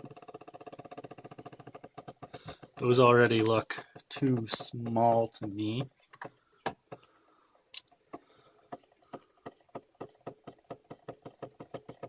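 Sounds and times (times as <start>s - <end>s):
stepper motors clicking: 0.0s - 7.1s.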